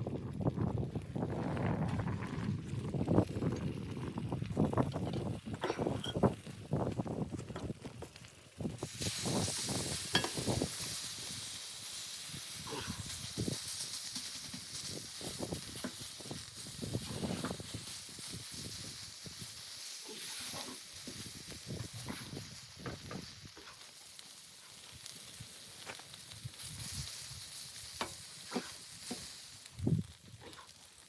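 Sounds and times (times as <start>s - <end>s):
soft crackles and knocks: 0.1s - 8.5s, 14.1s - 17.8s, 20.5s - 24.8s, 27.8s - 31.0s
steady high hiss: 8.7s - 30.4s.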